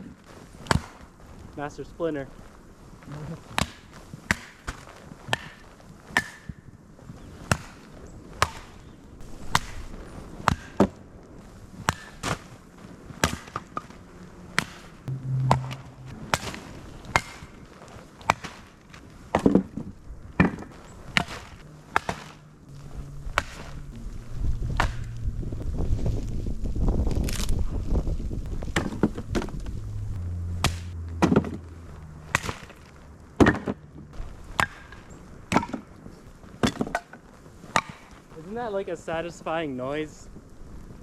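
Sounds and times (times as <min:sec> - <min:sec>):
axe chopping firewood: 0:03.6 - 0:06.6, 0:10.5 - 0:10.9, 0:20.4 - 0:22.4, 0:32.3 - 0:32.8.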